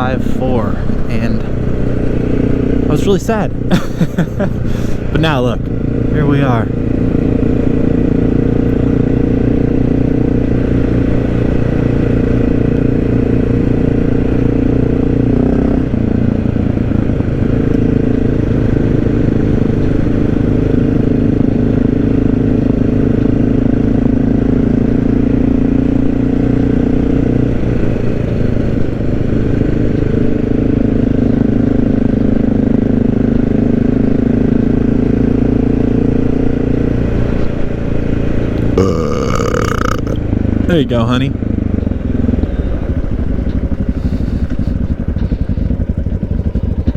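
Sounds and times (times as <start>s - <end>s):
motorcycle engine running: 0.0s - 46.9s.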